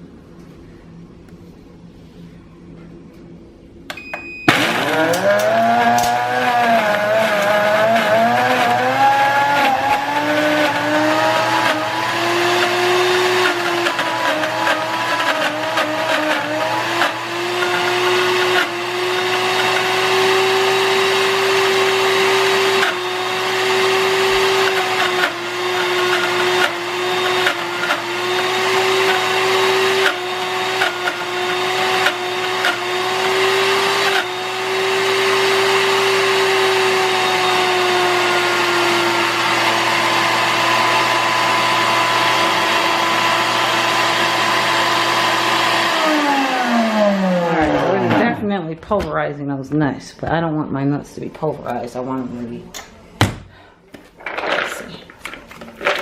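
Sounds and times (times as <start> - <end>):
short beep: 3.9 - 4.6
blender motor running: 4.5 - 48.4.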